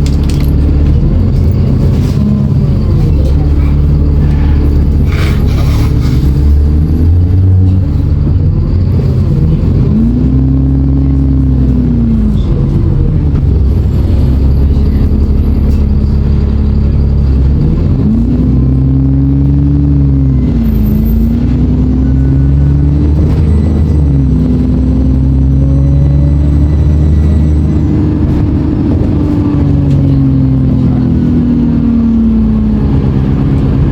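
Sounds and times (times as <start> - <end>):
bus diesel engine droning: 0.0 - 33.9.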